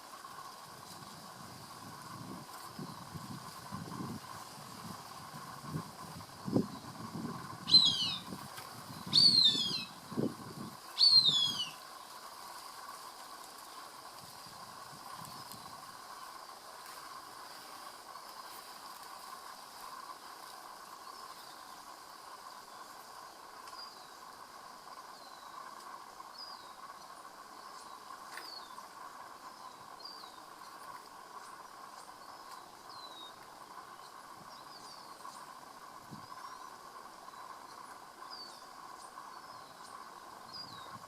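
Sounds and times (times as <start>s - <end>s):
insects chirring: 0.0s - 41.0s
bird chirping: 7.6s - 11.8s.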